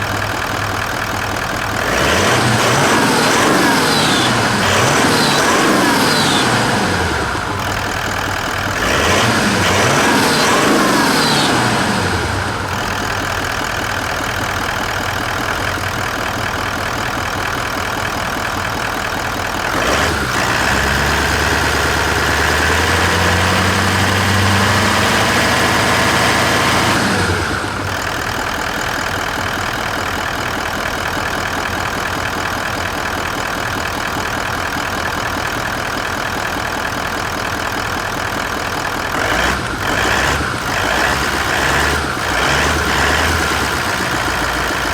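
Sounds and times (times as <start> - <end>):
diesel engine idling and revving: 0.0 - 44.9.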